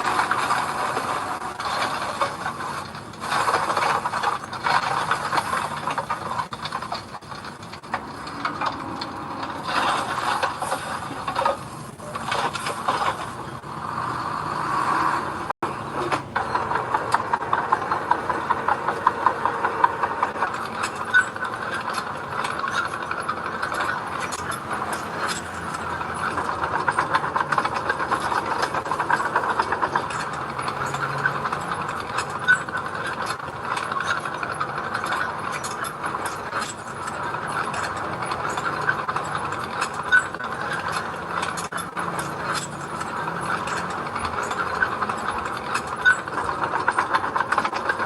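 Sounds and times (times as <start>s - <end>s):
bulldozer engine running: 0.0s - 48.0s
steel tracks rattling and clanking: 0.0s - 48.0s.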